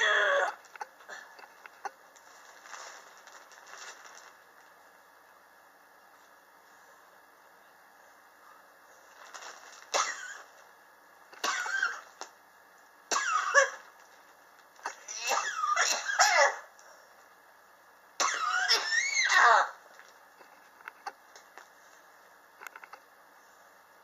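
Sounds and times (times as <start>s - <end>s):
person coughing harshly: 9.9s - 10.5s, 11.4s - 12.1s, 13.1s - 13.8s, 14.9s - 16.7s, 18.2s - 19.8s.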